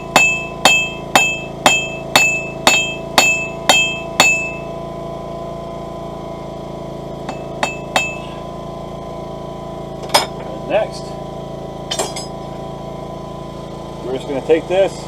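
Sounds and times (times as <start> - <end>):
hammer ringing on steel anvil: 0.0 - 4.7, 7.3 - 8.4
steady hum: 0.0 - 15.0.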